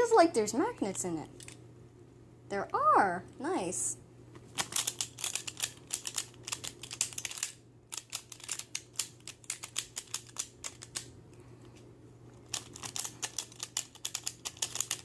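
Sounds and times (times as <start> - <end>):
puzzle cube pieces clicking: 4.6 - 11.1, 12.5 - 15.0.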